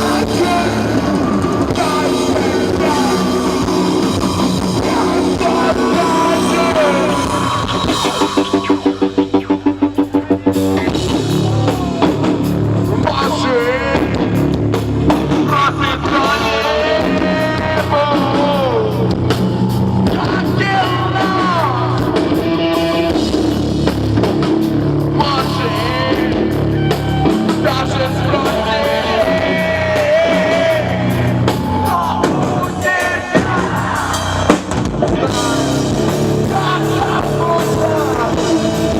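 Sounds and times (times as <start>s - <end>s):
person singing: 0.0s - 12.3s, 15.4s - 19.2s, 25.2s - 38.9s
rock band playing live: 0.0s - 38.9s.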